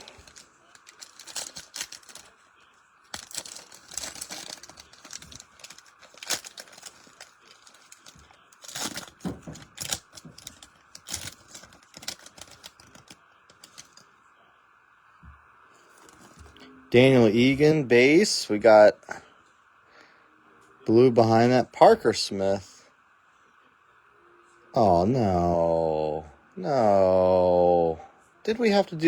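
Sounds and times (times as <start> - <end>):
cards being handled: 0.0 - 2.4, 3.1 - 14.0, 15.8 - 16.6
foil wrappers tearing and crinkling: 0.0 - 2.5, 3.1 - 14.0.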